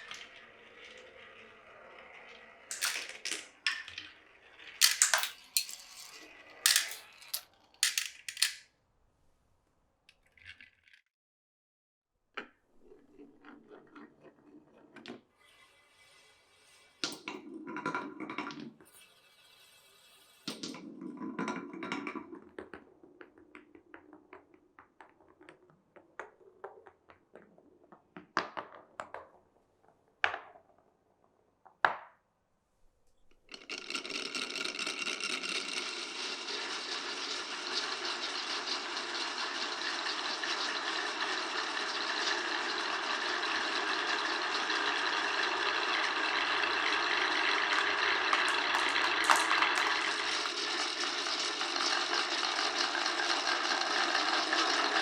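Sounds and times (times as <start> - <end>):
marbles clicking on wood: 0.0 - 8.6, 33.6 - 55.0
marbles rolling along tracks: 0.0 - 8.6, 12.8 - 29.4, 33.5 - 55.0
rattling: 2.3 - 4.1, 4.7 - 8.6.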